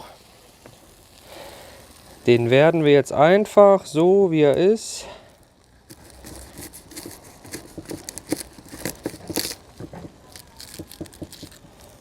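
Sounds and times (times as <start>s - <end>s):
knife cutting garlic skin crackling: 5.8s - 12.0s.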